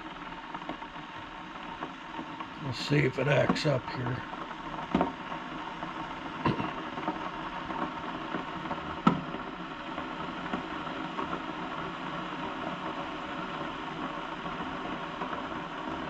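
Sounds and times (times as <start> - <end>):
coffee maker hissing: 2.6 - 4.2.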